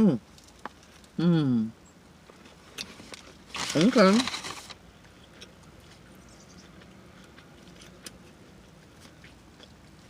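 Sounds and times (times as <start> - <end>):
chewing and mouth smacking: 5.0 - 10.0.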